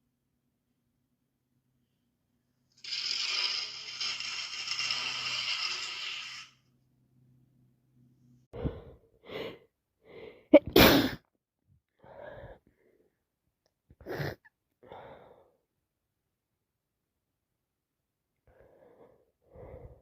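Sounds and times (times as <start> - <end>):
person sneezing: 10.6 - 11.2, 14.0 - 14.4.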